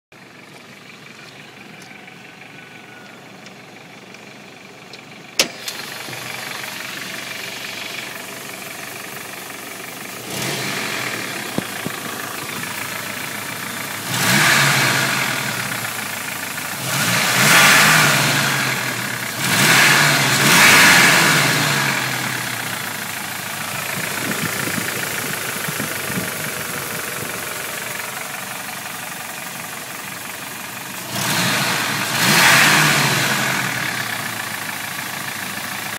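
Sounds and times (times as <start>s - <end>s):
engine idling with knocking: 0.1s - 35.9s
engine revving: 10.1s - 28.4s, 30.8s - 34.8s.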